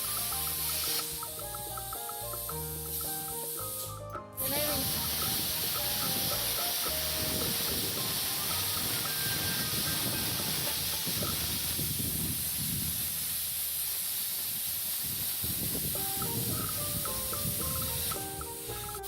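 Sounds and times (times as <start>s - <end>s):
light background music: 0.0s - 11.7s, 16.0s - 19.0s
cutting torch hissing: 0.0s - 19.0s.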